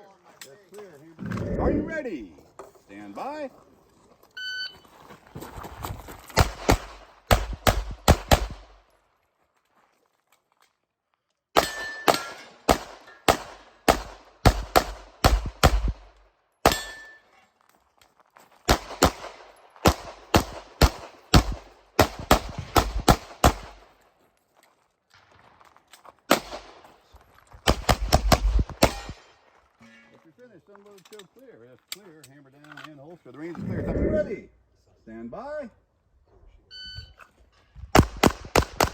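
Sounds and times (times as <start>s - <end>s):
pistol shots: 6.4s - 8.8s, 11.6s - 17.0s, 18.7s - 23.9s, 26.3s - 26.8s, 27.7s - 29.2s, 38.0s - 38.9s.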